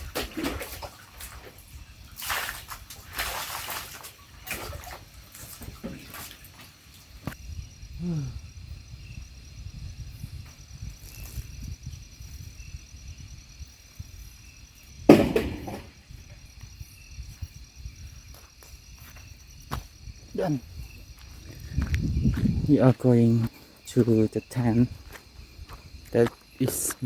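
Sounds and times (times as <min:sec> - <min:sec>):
insects trilling: 0:00.0 - 0:27.0
loud sudden knock: 0:15.1 - 0:16.0.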